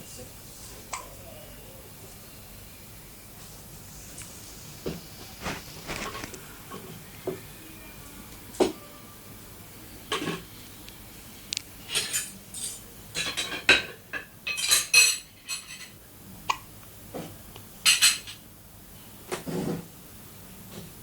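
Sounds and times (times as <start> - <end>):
dishes and utensils clinking: 11.9 - 16.0, 17.8 - 18.4.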